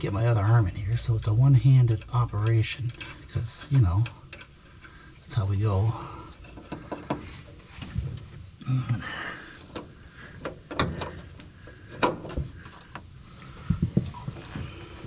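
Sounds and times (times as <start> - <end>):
small metal clicks and knocks: 0.4 - 5.3, 6.2 - 7.6, 9.6 - 13.1.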